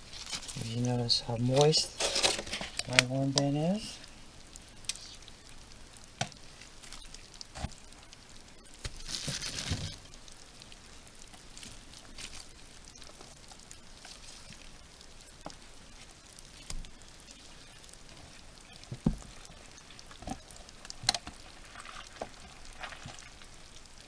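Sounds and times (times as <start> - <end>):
soft clicks and crackles: 0.0 - 24.0
wet rustle: 0.0 - 24.0.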